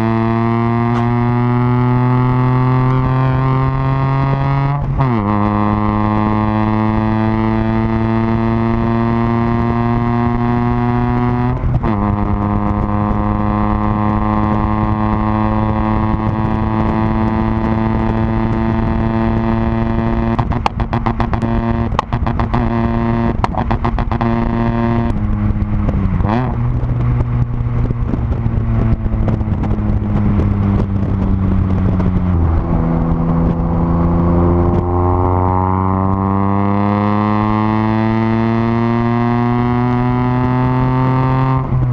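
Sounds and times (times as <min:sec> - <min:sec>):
car engine accelerating: 0:00.0 - 0:41.9
sharp clicks or knocks: 0:00.8 - 0:01.3.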